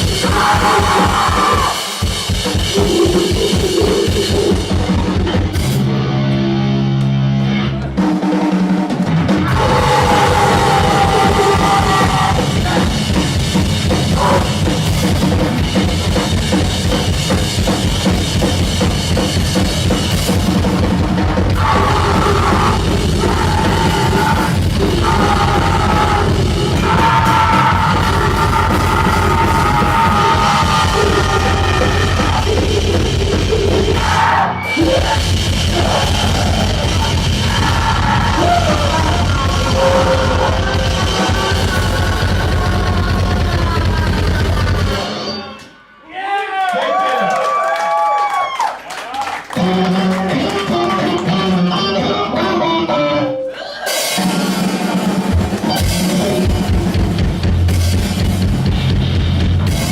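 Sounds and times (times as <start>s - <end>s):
rapid dense drumming: 0.0s - 5.9s, 8.0s - 45.1s, 53.9s - 59.9s
low notes: 0.0s - 46.0s
distorted noise wall: 21.0s - 45.9s.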